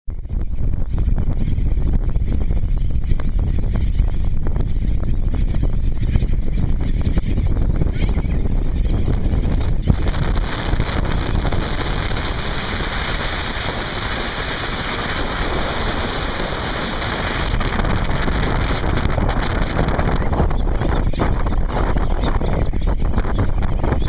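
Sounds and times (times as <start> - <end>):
low rumble: 0.1 - 24.0
wind buffeting microphone: 0.1 - 24.0
open water: 7.9 - 24.0.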